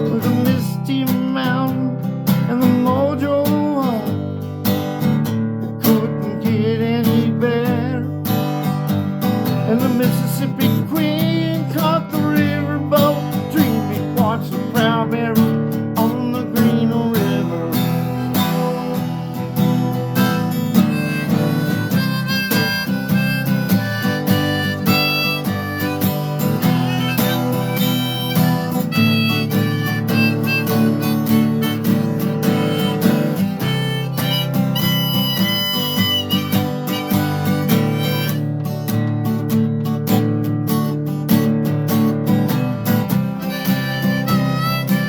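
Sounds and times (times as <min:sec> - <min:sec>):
strummed acoustic guitar: 0:00.0 - 0:45.0
harmonica playing: 0:16.3 - 0:39.0, 0:42.8 - 0:45.0.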